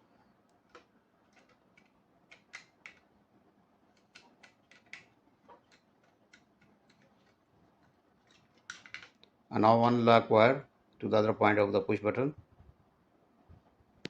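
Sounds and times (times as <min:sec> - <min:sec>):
wires clicking while handled: 0:00.4 - 0:03.1, 0:03.9 - 0:09.4.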